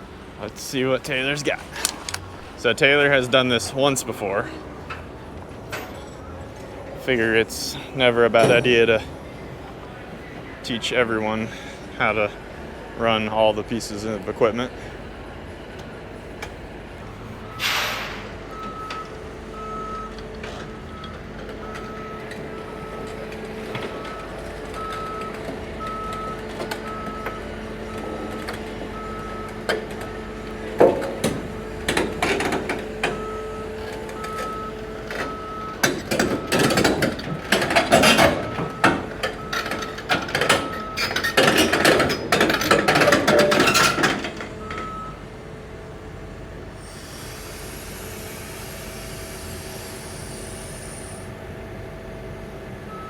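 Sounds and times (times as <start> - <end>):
steel tracks clanking and squealing: 0.0 - 12.8, 16.7 - 45.3
excavator engine running: 0.0 - 53.0
excavator travel alarm beeping: 0.1 - 10.7, 17.0 - 53.0.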